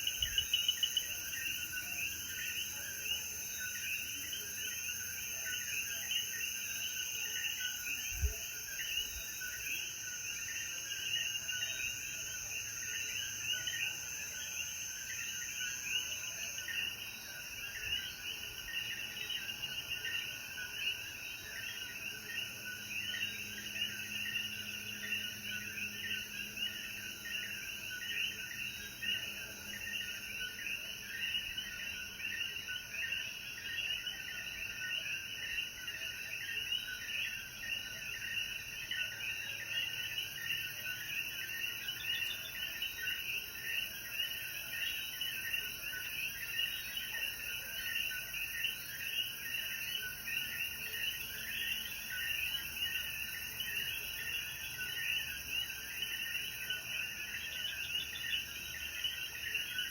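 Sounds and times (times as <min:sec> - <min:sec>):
frogs calling: 0:00.0 - 0:59.9.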